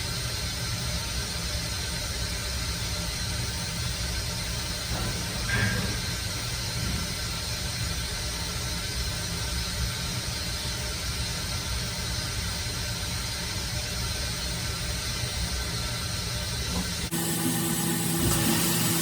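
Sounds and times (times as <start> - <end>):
milling machine hiss and hum: 0.0 - 19.0.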